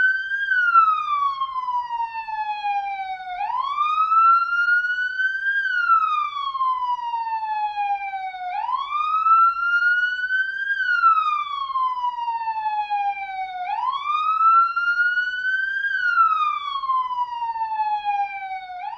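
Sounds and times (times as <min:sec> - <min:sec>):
police siren wailing: 0:00.0 - 0:18.9.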